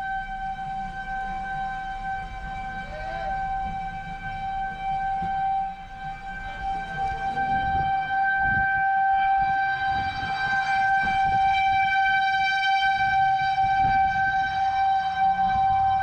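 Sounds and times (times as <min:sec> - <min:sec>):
low uneven rumble: 0:00.0 - 0:08.5
warning siren steady tone: 0:00.0 - 0:16.0.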